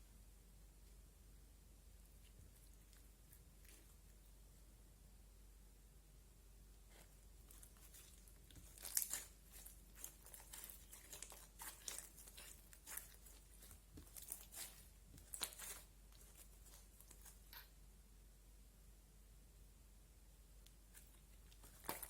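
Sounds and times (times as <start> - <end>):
slime crackling and popping: 7.5 - 17.7, 21.5 - 22.0.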